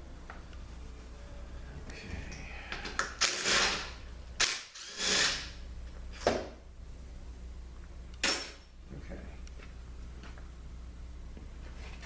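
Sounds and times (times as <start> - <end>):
low steady hum: 0.0 - 12.0.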